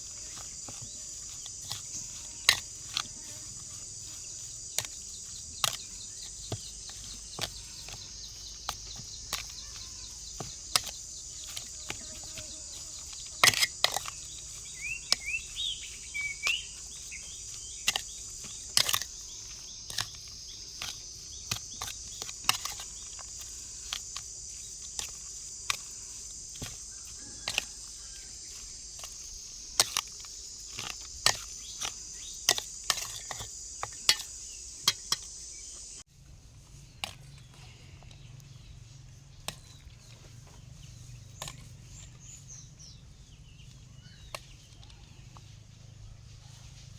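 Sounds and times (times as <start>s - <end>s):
insects droning: 0.0s - 46.9s
bird chirping: 3.2s - 23.4s, 37.2s - 46.8s.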